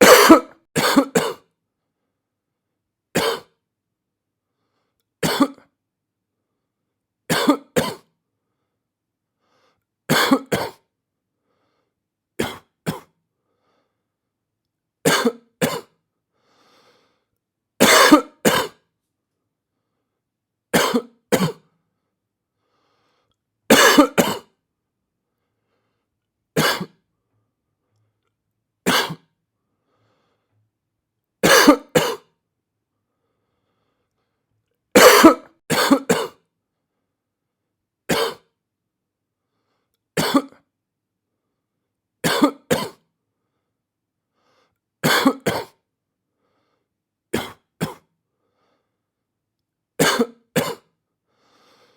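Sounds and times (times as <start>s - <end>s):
person coughing: 0.0s - 1.5s, 3.2s - 3.5s, 5.2s - 5.6s, 7.3s - 8.1s, 10.1s - 10.8s, 12.4s - 13.2s, 15.1s - 16.0s, 17.8s - 18.8s, 20.8s - 21.6s, 23.7s - 24.5s, 26.6s - 27.0s, 28.9s - 29.3s, 31.4s - 32.3s, 35.0s - 36.4s, 38.1s - 38.5s, 40.2s - 40.6s, 42.2s - 43.0s, 45.0s - 45.8s, 47.4s - 48.1s, 50.0s - 50.9s.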